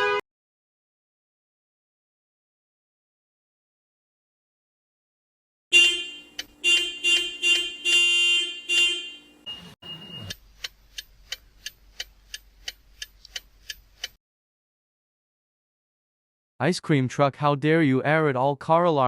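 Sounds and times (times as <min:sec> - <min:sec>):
car horn blasts: 0:00.0 - 0:00.2, 0:05.7 - 0:10.3
short beep: 0:09.0 - 0:10.4
steady clicking: 0:10.3 - 0:14.2.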